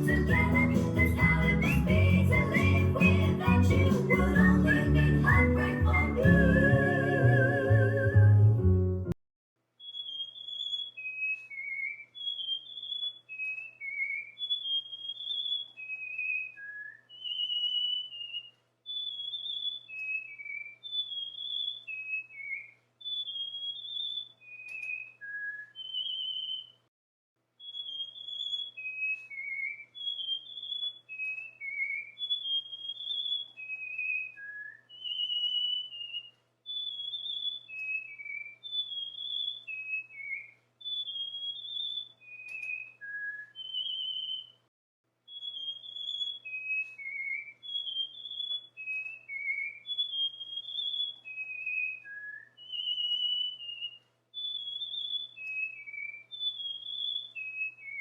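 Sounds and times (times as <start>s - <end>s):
cockatiel whistling: 0.0s - 8.3s, 9.8s - 26.8s, 27.6s - 44.6s, 45.3s - 58.0s.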